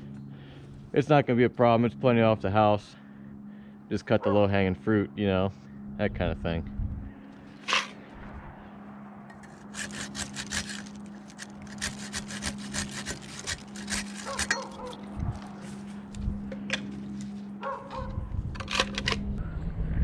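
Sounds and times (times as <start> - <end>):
steady low hum: 0.0 - 20.0
hand saw cutting tree limb: 9.3 - 16.1.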